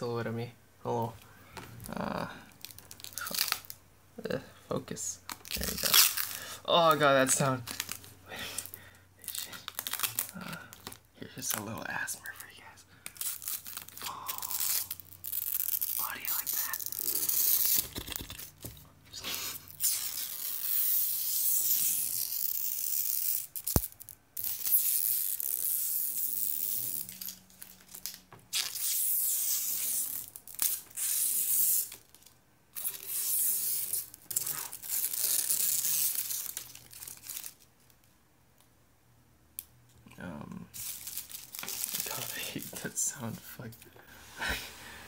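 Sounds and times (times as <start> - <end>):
plastic film peeling crackle: 1.9 - 3.8, 5.2 - 11.7, 12.3 - 18.8, 19.6 - 38.2, 40.7 - 43.0.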